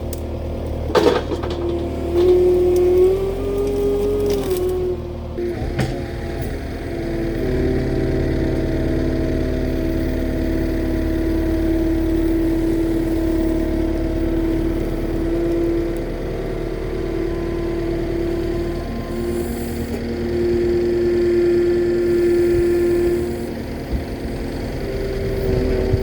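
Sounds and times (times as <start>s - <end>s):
vehicle engine running: 0.0s - 26.0s.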